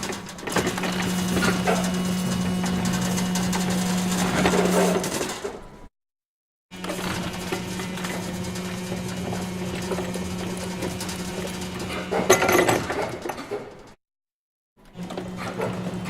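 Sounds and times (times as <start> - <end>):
machinery humming: 6.8 - 12.5.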